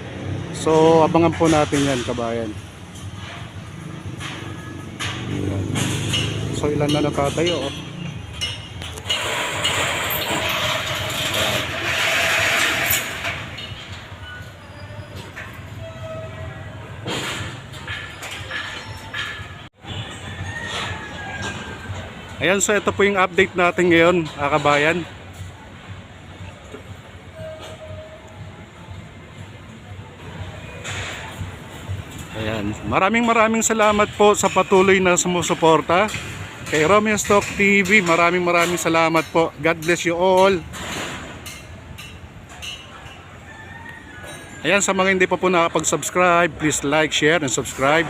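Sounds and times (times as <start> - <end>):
train passing with rushing noise: 0.0 - 43.4
city traffic rumble: 0.0 - 48.0
faint background music: 17.8 - 42.5.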